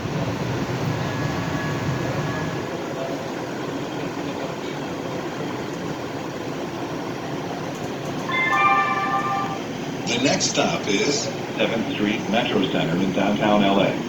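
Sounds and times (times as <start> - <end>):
train wheels rumbling on rail: 0.0 - 8.3
faint whine: 8.2 - 14.0.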